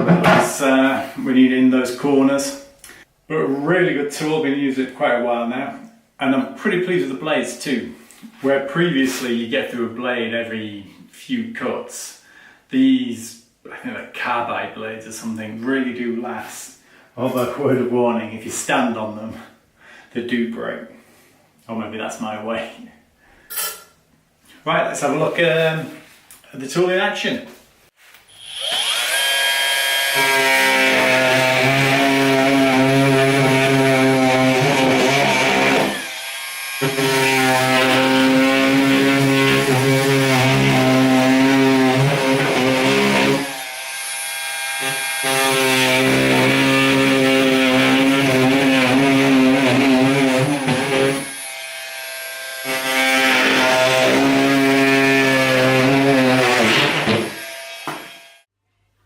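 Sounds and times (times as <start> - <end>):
oscillating multi-tool buzzing: 28.3 - 30.9, 35.6 - 37.9, 43.1 - 45.5, 50.6 - 53.2, 57.2 - 58.5
blade cutting deeper buzz: 28.3 - 58.5.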